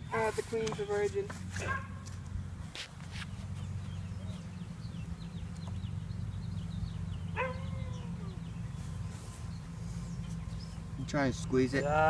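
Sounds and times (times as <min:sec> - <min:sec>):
honeybee swarm humming: 0:00.0 - 0:12.0
dog yelp: 0:01.6 - 0:02.0, 0:07.4 - 0:08.4
faint rapid bird chirps: 0:03.2 - 0:12.0.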